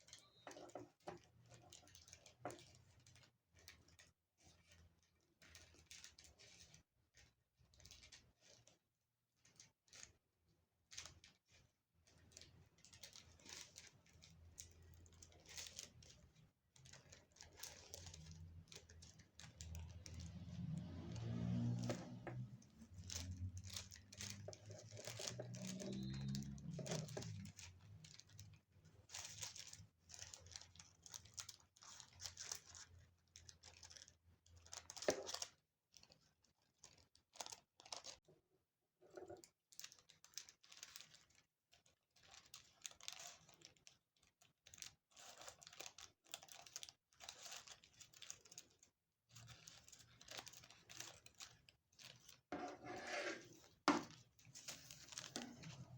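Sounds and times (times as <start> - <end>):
tissue paper rustling and crinkling: 10.9 - 38.2, 39.4 - 55.9.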